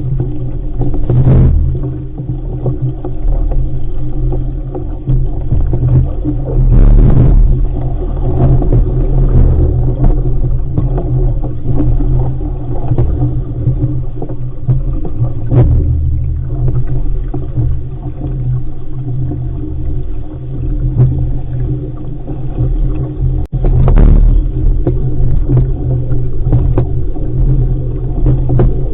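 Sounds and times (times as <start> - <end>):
wind buffeting microphone: 0.0 - 3.3, 5.2 - 18.6, 23.2 - 28.9
water rushing along hull: 0.0 - 28.9
knocks on boat: 0.2 - 3.5, 5.2 - 12.1, 14.8 - 18.4, 23.6 - 27.0.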